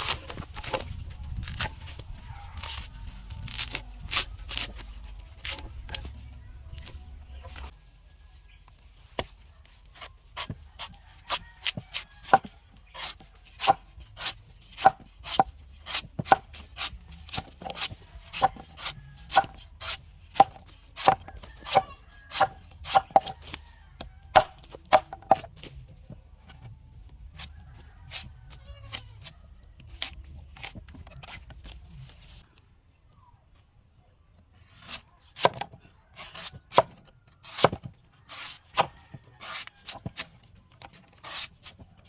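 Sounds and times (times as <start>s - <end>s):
blade chopping coconut: 0.0s - 7.7s, 9.1s - 25.7s, 34.8s - 42.0s.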